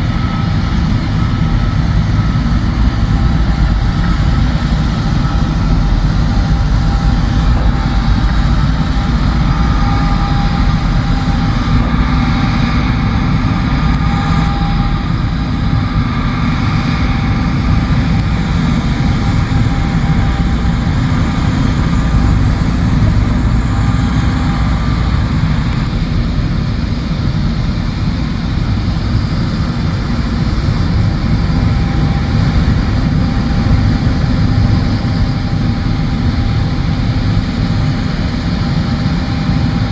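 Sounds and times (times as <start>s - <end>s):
faint wavering whine: 0.0s - 26.7s
heavy engine drone: 0.0s - 39.9s.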